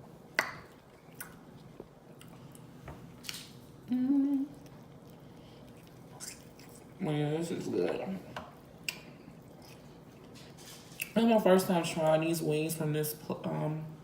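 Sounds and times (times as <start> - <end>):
chewing with mouth smacks: 0.4 - 3.6, 4.5 - 7.0, 8.5 - 11.2
person humming: 3.9 - 4.6.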